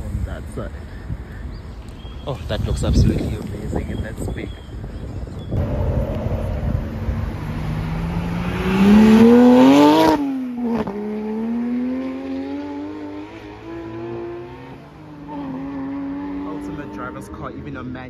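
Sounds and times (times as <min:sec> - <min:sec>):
sports car engine accelerating: 0:05.6 - 0:17.8.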